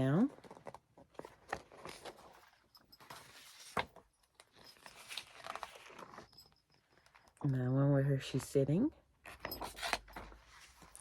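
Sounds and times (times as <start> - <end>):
pages rustling: 0.4 - 2.4, 3.1 - 4.0, 4.6 - 6.3.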